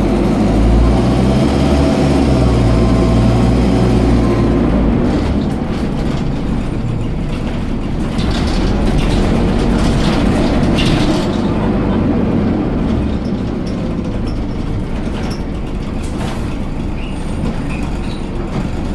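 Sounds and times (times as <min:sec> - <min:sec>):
bus engine and road drone: 0:00.0 - 0:18.9
rattling clicks: 0:05.2 - 0:12.0.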